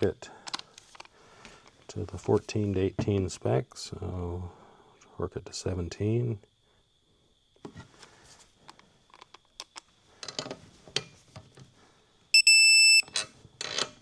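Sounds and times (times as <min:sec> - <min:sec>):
torque wrench beep: 0:12.3 - 0:13.2.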